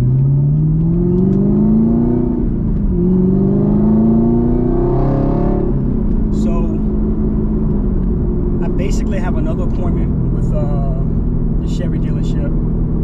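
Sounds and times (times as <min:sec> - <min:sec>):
car engine accelerating: 0:00.0 - 0:13.0.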